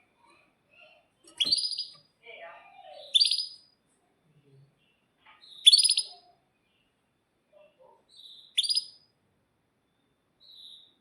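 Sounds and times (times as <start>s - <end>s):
canary singing trills: 0.8s - 3.8s, 4.8s - 9.1s.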